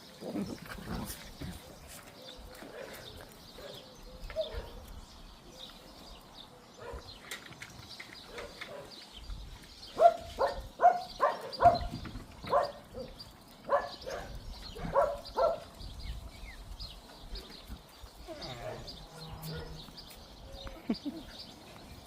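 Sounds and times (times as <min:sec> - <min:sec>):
puppies yapping: 0:10.0 - 0:15.8.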